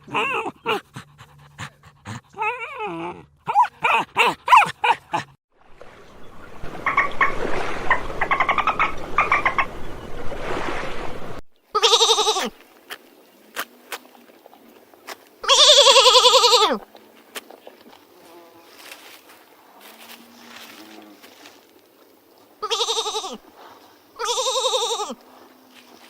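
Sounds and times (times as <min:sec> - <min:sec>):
goat bleating: 0:11.7 - 0:12.6, 0:15.4 - 0:16.8, 0:22.6 - 0:23.4, 0:24.2 - 0:25.2.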